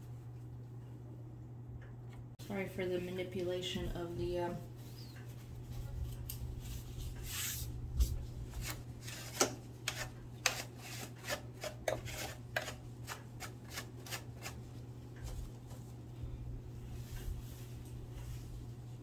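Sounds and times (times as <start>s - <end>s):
steady low hum: 0.0s - 19.0s
rubbing and scraping strokes: 4.8s - 14.7s.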